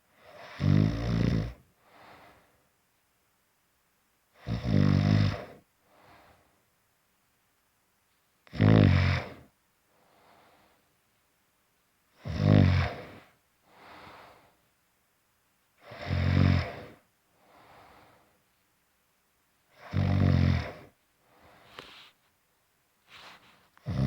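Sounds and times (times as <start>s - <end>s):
person snoring: 0.2s - 1.6s, 4.4s - 5.6s, 8.5s - 9.5s, 12.2s - 13.2s, 15.8s - 17.0s, 19.8s - 20.9s
soft short breath: 9.9s - 11.0s, 17.3s - 18.6s, 21.2s - 22.4s, 23.0s - 23.8s.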